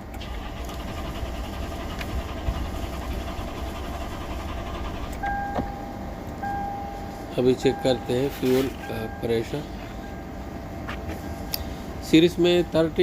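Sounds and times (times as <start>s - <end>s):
engine cranking without starting: 0.0s - 5.6s
electronic warning chime beeping: 5.2s - 10.4s.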